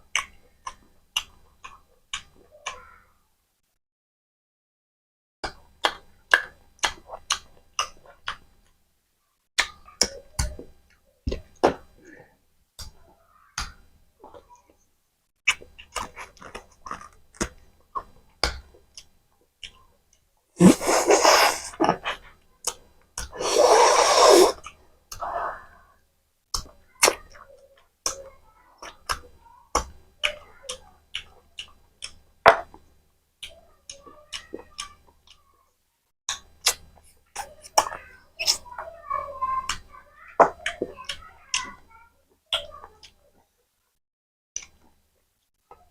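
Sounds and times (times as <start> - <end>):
wet chewing and lip-smacking: 0.1 - 2.3, 5.8 - 8.4, 15.5 - 19.9.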